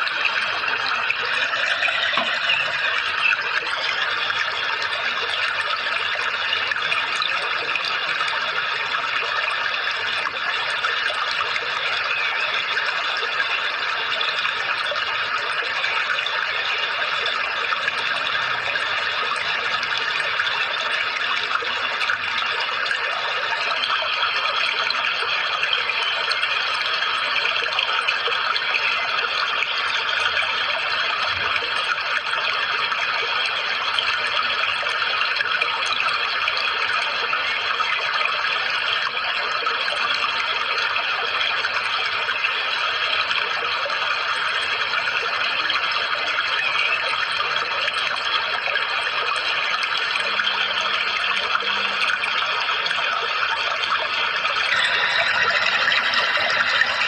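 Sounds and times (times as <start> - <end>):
rushing running water: 0.0 - 57.0
faint high whine: 54.0 - 57.0.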